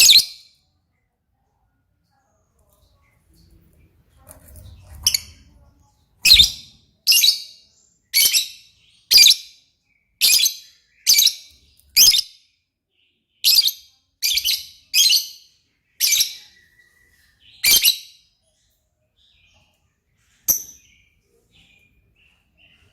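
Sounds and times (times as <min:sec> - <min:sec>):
lovebird high-pitched calls: 0:00.0 - 0:00.5, 0:06.2 - 0:09.6, 0:10.2 - 0:12.4, 0:13.4 - 0:16.7, 0:17.6 - 0:18.2.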